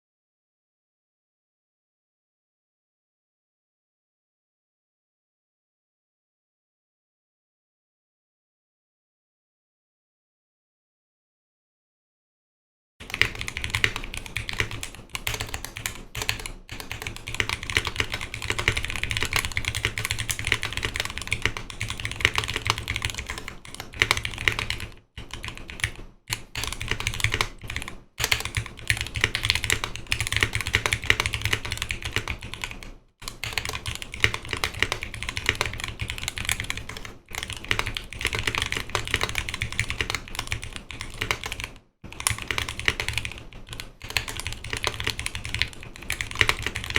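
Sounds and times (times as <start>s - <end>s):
mechanical keyboard typing: 13.0s - 46.9s.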